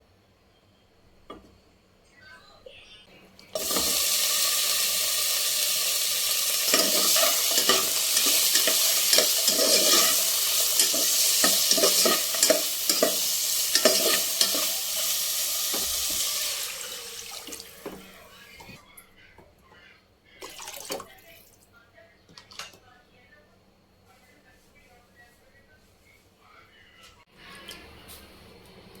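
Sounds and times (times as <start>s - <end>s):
food sizzling in a pan: 3.5s - 18.7s
spoon scraping and knocking pan: 3.6s - 4.2s, 6.3s - 16.9s.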